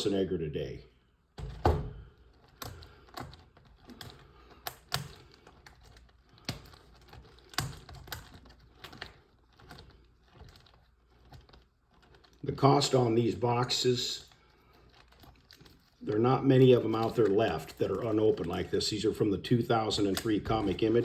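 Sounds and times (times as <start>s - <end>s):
foil packs crinkling: 5.2s - 21.0s.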